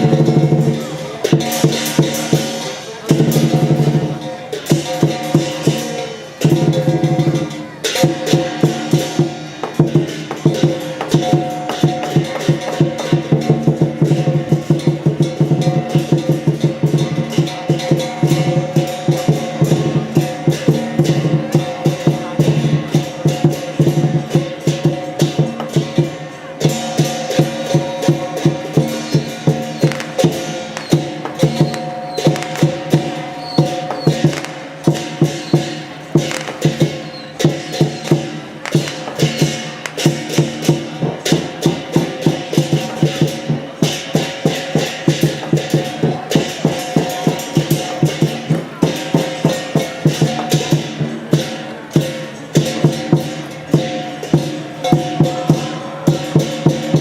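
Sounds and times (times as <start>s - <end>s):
drum beaten in fast strokes: 0.0s - 57.0s.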